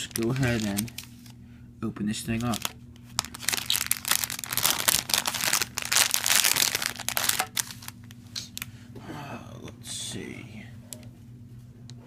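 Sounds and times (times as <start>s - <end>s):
packaging crinkling and clicking: 0.0s - 1.4s, 2.3s - 8.7s.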